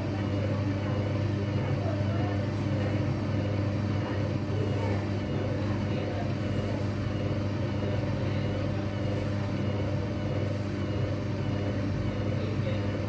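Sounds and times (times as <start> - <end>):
washing machine spinning: 0.0 - 13.0.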